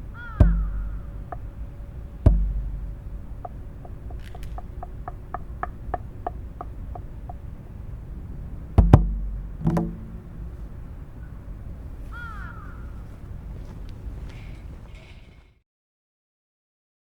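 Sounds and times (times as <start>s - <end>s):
steady low rumble: 0.0s - 12.1s
crow cawing: 0.1s - 1.6s, 12.0s - 13.1s
goblet drum played with fingers: 0.4s - 7.4s, 8.8s - 10.7s.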